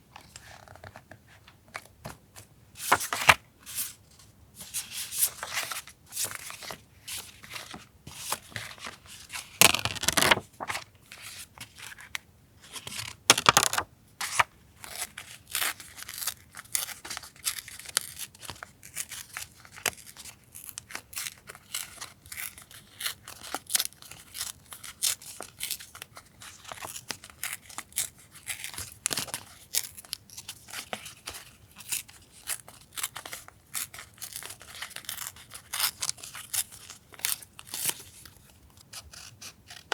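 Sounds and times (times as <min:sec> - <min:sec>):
loud paper rustling: 0:07.4 - 0:10.9, 0:13.3 - 0:14.5.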